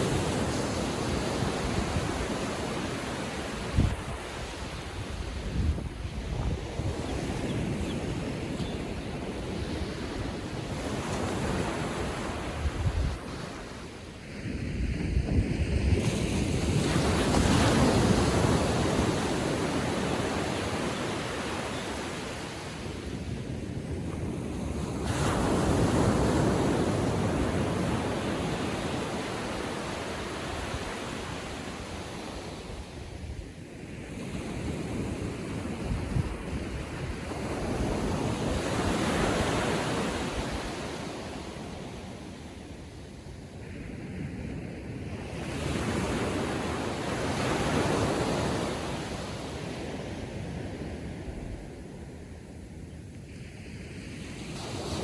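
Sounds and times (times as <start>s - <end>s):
wind rumble on microphone: 0.0s - 21.0s, 34.2s - 40.9s.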